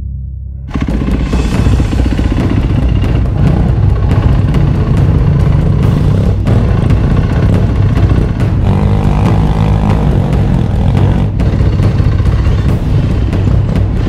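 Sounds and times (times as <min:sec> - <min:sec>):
dirt bike engine revving: 0:00.7 - 0:14.0.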